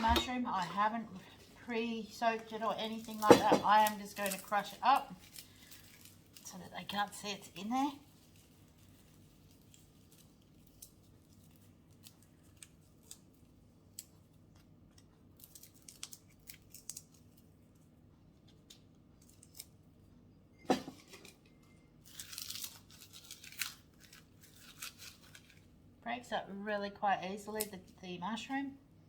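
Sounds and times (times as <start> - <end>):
dried mushroom crunching: 0.1 - 14.1, 15.3 - 17.5, 22.0 - 25.8.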